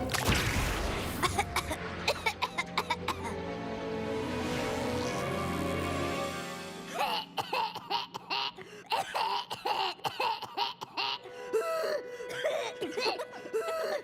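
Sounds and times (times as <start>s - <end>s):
background music: 0.0s - 14.0s
cartoon character coughing: 6.9s - 11.2s.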